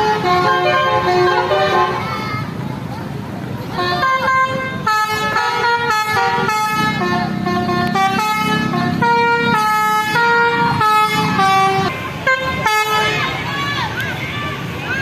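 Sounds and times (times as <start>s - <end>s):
musical vehicle horn playing a tune: 0.0s - 2.2s, 3.8s - 13.3s.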